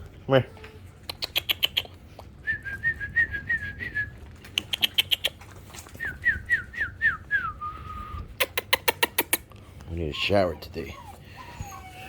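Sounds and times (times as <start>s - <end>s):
whistled notes: 6.0s - 8.3s.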